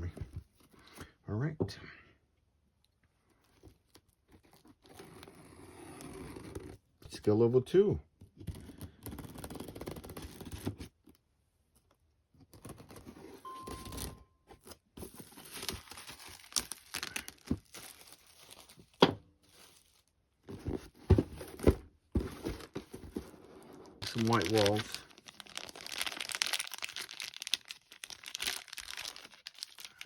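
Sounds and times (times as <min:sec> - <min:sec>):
plastic bags crinkling: 0:15.4 - 0:20.2, 0:24.0 - 0:30.0.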